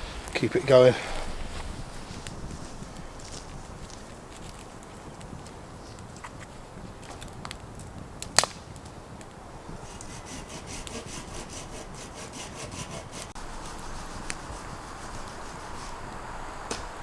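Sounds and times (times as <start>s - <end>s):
wood cracking: 2.2s - 14.4s
hand saw cutting wood: 9.8s - 16.0s.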